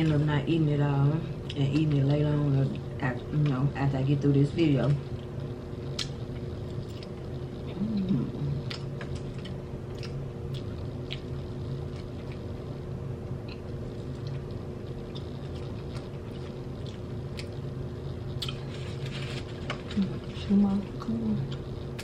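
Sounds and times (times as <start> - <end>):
steady low hum: 0.0 - 22.0
person chewing: 5.8 - 12.6, 13.4 - 17.6, 18.3 - 20.0.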